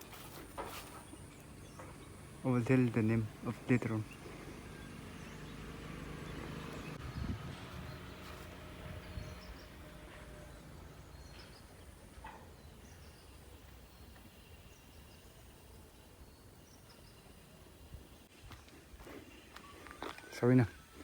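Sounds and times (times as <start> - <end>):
low engine rumble: 0.0 - 16.0.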